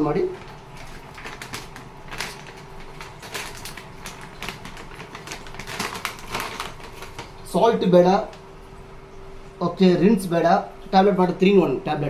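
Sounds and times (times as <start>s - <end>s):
plastic wrapper crinkling: 0.0s - 8.5s.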